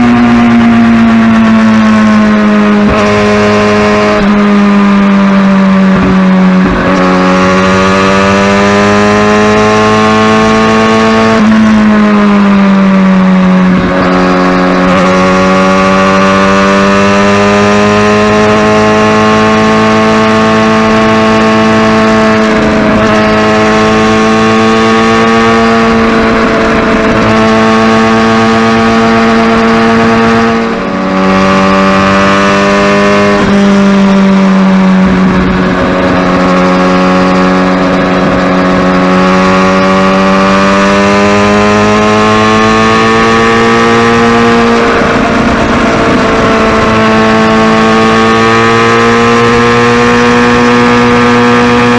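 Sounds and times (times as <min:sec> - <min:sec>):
motorcycle engine running: 0:00.0 - 0:51.9.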